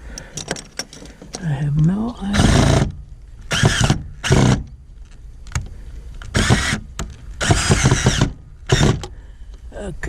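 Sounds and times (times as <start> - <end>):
cordless drill driving screws: 2.3 - 4.7, 6.3 - 9.1.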